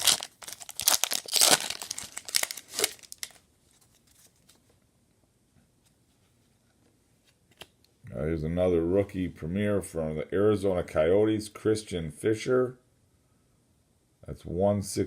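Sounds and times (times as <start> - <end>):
wrapper tearing and crinkling: 0.0 - 4.4.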